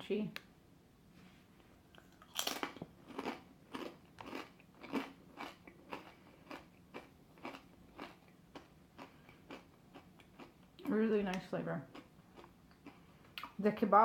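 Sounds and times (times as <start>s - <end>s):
potato chip crunching: 2.0s - 9.6s.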